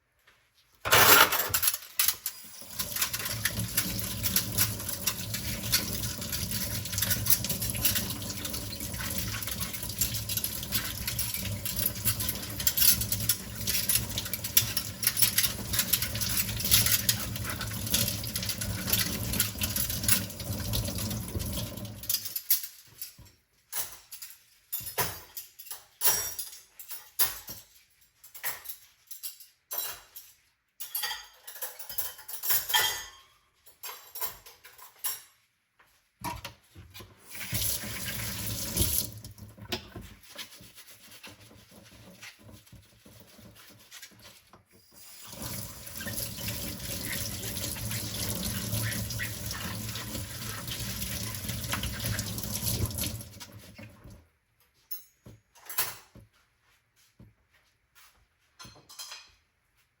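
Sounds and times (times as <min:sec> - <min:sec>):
dishes clinking: 0:21.7 - 0:35.5, 0:58.6 - 0:59.5
tap running into sink: 0:37.4 - 0:40.1, 0:45.2 - 0:54.2
water splashing: 0:45.3 - 0:53.4.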